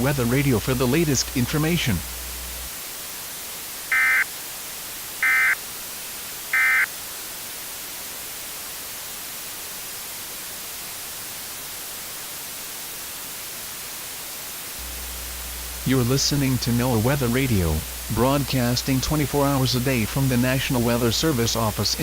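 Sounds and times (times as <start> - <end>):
static hiss: 0.0 - 22.0
digital data tone bursts: 3.9 - 4.3, 5.2 - 5.6, 6.6 - 6.9.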